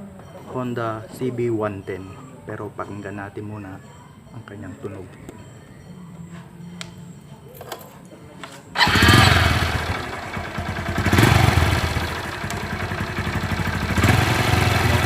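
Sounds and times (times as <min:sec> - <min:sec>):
motorcycle engine starting and revving: 0:08.7 - 0:15.0.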